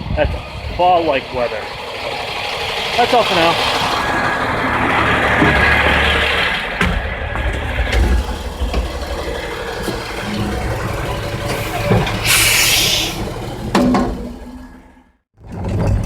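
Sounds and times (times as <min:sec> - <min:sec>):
truck engine rumbling: 0:00.0 - 0:16.0
air hiss: 0:12.2 - 0:13.3.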